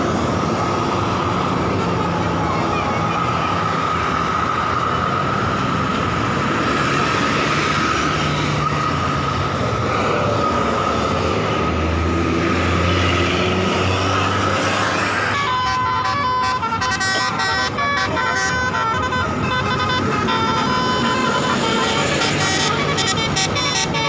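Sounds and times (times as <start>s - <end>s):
bus passing: 0.0s - 24.0s
multi-tone bus horn: 13.8s - 24.0s.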